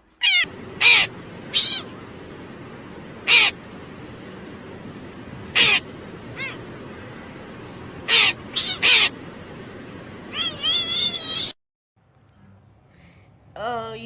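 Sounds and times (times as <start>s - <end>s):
cat meowing: 0.2s - 1.9s, 5.6s - 6.6s, 8.1s - 9.1s, 10.3s - 11.6s.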